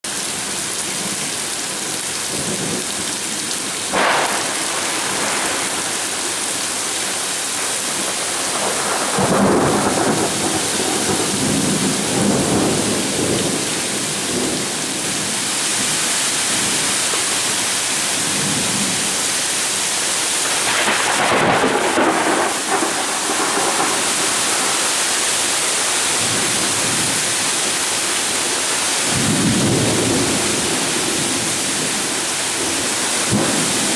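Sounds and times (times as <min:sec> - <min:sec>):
heavy rain pouring: 0:00.0 - 0:33.9
sharp thunder crack: 0:03.9 - 0:06.9, 0:08.1 - 0:14.8, 0:20.5 - 0:24.8, 0:33.2 - 0:33.9
rolling thunder rumbles: 0:03.9 - 0:15.5, 0:20.4 - 0:25.2, 0:29.0 - 0:33.9.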